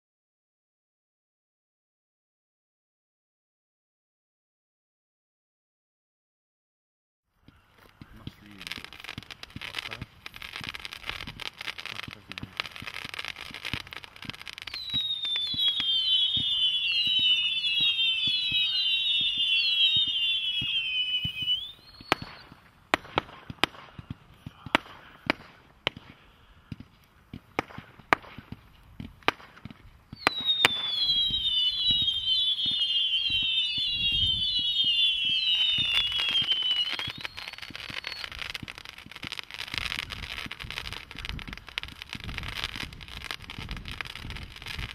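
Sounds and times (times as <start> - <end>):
firework bangs: 7.9 - 44.9
firework whistles falling in pitch: 13.0 - 23.5, 30.1 - 44.9.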